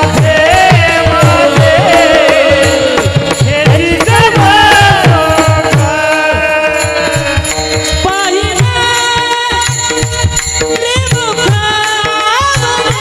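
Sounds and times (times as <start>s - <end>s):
harmonium drone: 0.0s - 13.0s
person singing: 0.0s - 13.0s.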